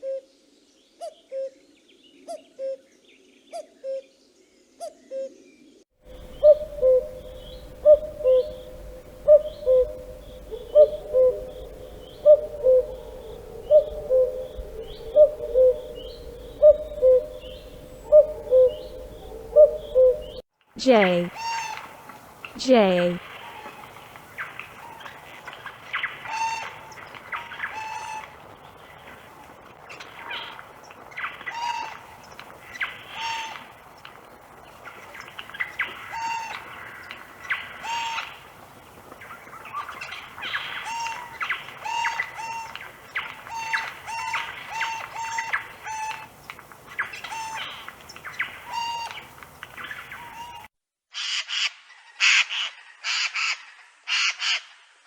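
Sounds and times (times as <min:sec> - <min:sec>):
jay calling: 0:06.1 - 0:21.9, 0:22.6 - 0:23.4, 0:43.4 - 0:46.3.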